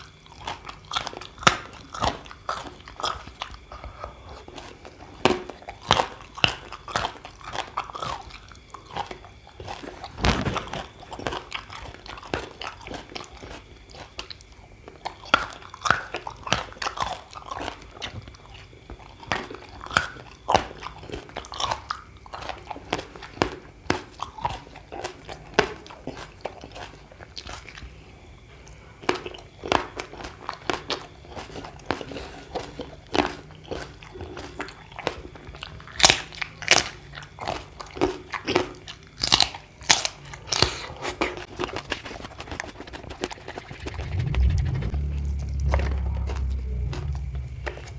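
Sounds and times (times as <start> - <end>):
crunchy food crunching: 0.0 - 47.9
wet chewing: 0.0 - 47.9.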